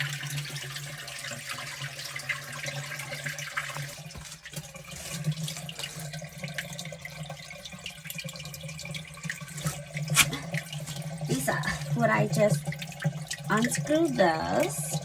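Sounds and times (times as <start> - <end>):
water running and splashing: 0.0 - 15.0.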